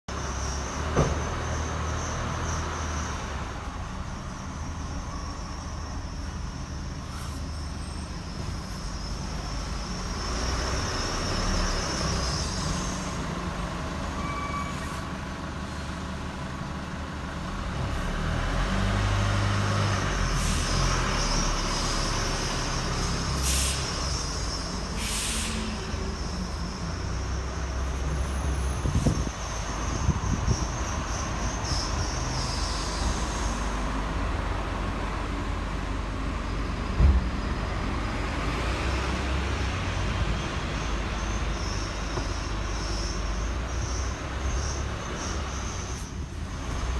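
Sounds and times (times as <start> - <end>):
truck running and road rumble: 0.1 - 46.9
driveline squealing: 7.0 - 15.1.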